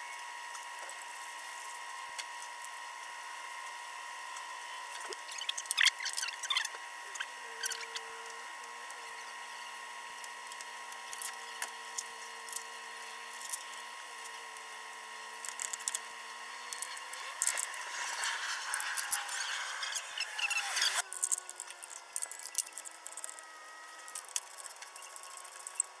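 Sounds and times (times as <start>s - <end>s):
power tool whining: 5.8s - 26.0s.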